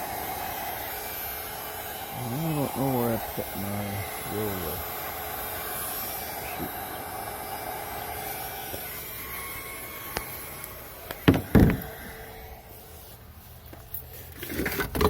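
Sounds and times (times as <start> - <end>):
heat gun blowing: 0.0 - 14.9
sharp knocks: 11.2 - 12.0.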